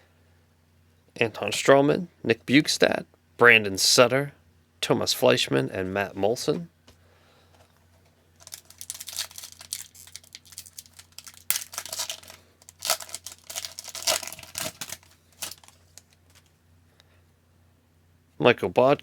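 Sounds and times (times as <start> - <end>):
foil wrapper tearing and crinkling: 8.4 - 16.5.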